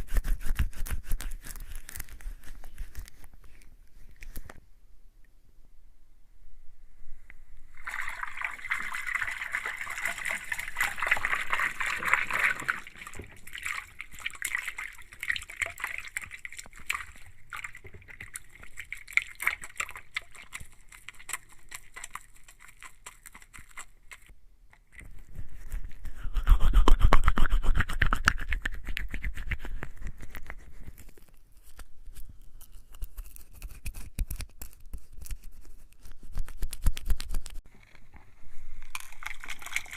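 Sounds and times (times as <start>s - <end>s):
wet hands rubbing with soap lather: 7.8s - 24.3s.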